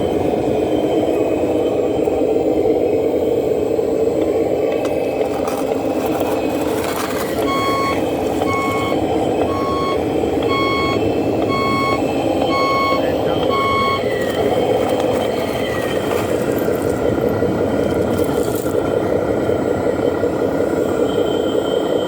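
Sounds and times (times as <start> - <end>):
model truck engine drone: 0.0 - 22.0
reversing beeper: 7.2 - 17.0.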